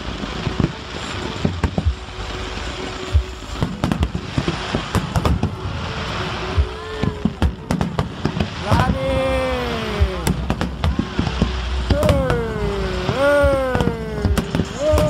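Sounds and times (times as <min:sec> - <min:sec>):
continuous fireworks crackle: 0:00.0 - 0:15.0
fireworks bangs and bursts: 0:00.0 - 0:15.0.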